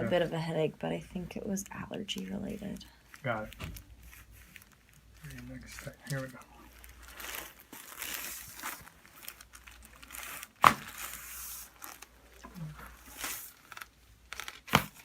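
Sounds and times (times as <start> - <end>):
soft rustling: 0.0 - 15.0.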